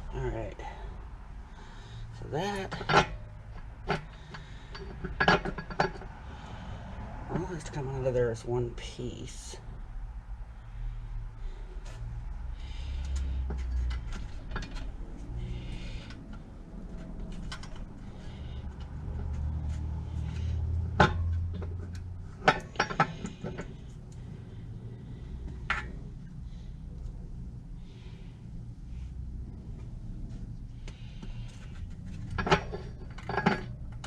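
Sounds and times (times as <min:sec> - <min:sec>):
metal parts and tools clinking: 0:02.5 - 0:06.1, 0:13.0 - 0:24.0, 0:30.9 - 0:34.0.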